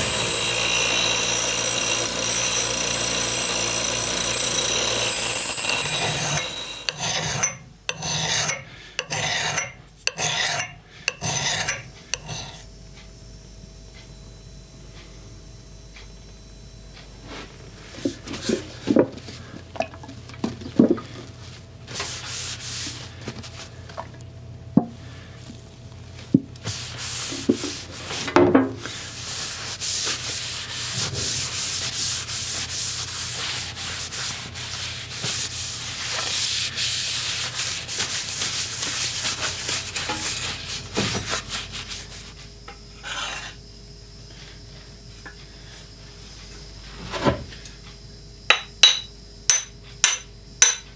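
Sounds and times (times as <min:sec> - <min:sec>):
sanding strokes: 0:00.0 - 0:07.0, 0:21.9 - 0:23.2, 0:26.6 - 0:42.4.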